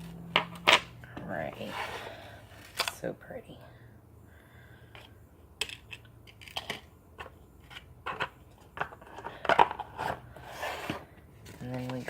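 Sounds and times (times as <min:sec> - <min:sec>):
rustling of handled items: 0:00.0 - 0:03.0, 0:05.8 - 0:12.0.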